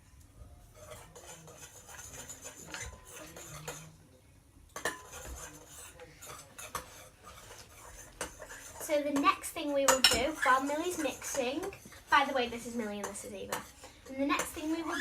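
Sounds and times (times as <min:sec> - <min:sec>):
utensil stirring slime in bowl: 0:00.6 - 0:04.0, 0:04.7 - 0:15.0
utensil clinking against bowl: 0:00.8 - 0:03.9, 0:04.8 - 0:12.0.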